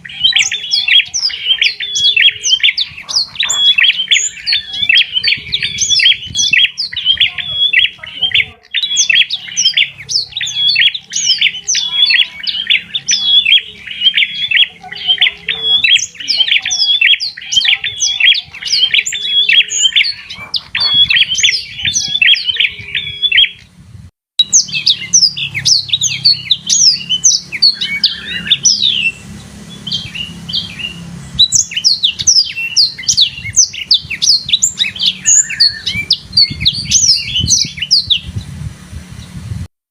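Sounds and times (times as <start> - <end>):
birds chirping: 0.0 - 39.7.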